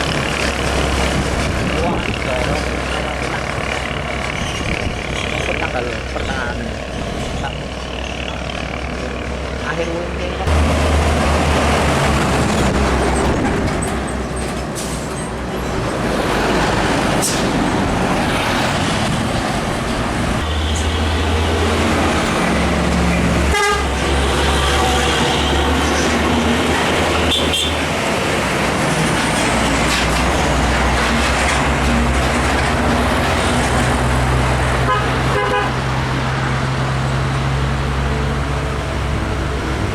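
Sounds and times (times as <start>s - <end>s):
heavy trucks passing: 0.0s - 39.9s
truck horn toot: 20.4s - 21.8s, 23.4s - 26.0s, 27.2s - 27.9s, 34.8s - 36.0s.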